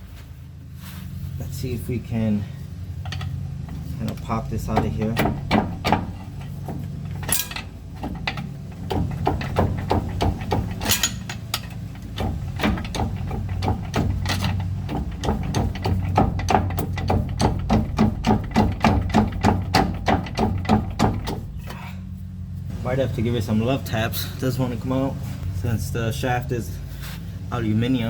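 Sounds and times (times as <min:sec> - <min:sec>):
pry bar knocking on metal: 0:04.7 - 0:21.6.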